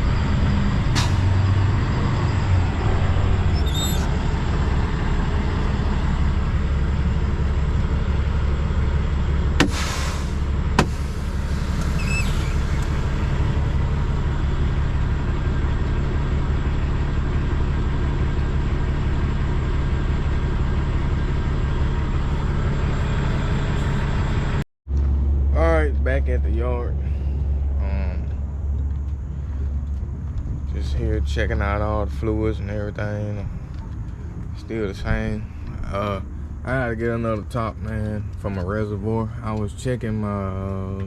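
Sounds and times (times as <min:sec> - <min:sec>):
diesel truck engine running: 0:00.0 - 0:41.0
short air hiss: 0:09.6 - 0:12.6.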